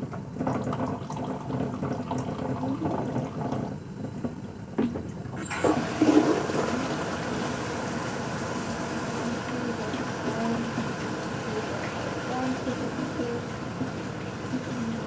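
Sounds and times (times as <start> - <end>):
water rushing: 5.4 - 15.0.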